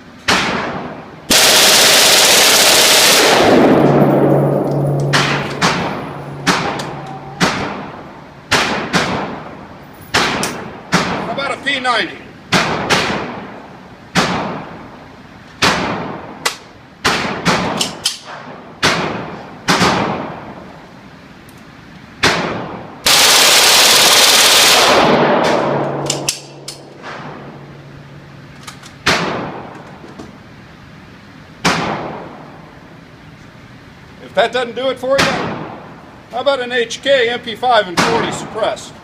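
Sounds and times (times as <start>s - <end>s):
submachine gun firing: 0.3s - 4.0s, 22.3s - 27.5s.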